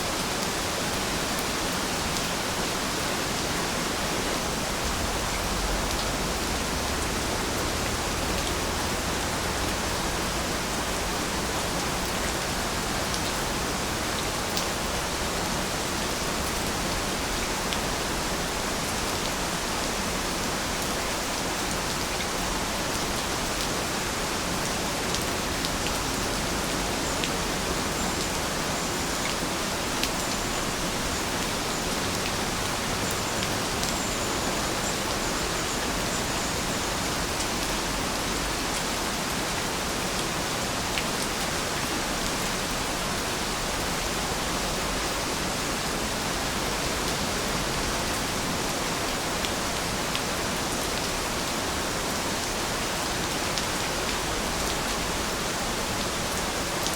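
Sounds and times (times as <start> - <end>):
steady rainfall: 0.0 - 56.9.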